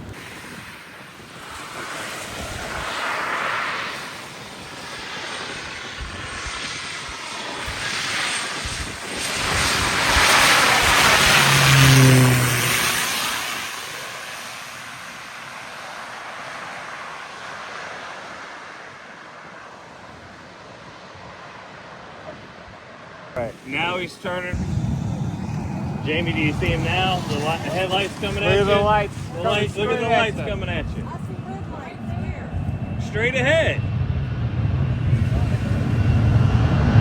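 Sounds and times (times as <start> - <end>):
wind buffeting microphone: 0.0 - 13.5, 24.4 - 37.0
propeller airplane flying overhead: 0.0 - 37.0.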